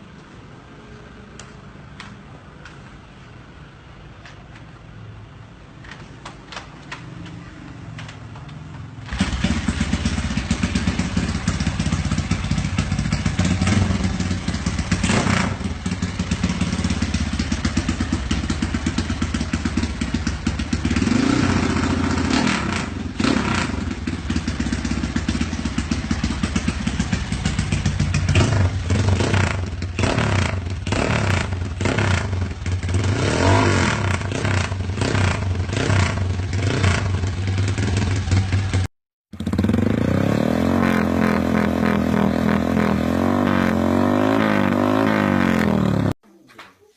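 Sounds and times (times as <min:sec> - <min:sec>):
motorcycle engine revving: 0:08.9 - 0:46.2.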